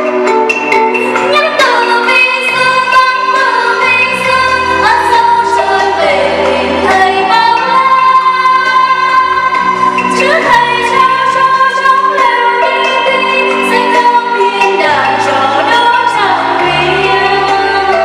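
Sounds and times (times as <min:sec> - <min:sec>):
instrumental accompaniment: 0:00.0 - 0:18.0
woman singing: 0:01.0 - 0:18.0.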